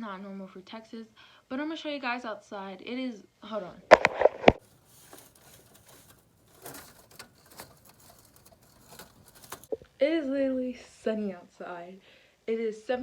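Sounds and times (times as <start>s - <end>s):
handling knocks and clicks: 3.9s - 9.8s
faint rustling: 3.9s - 9.9s.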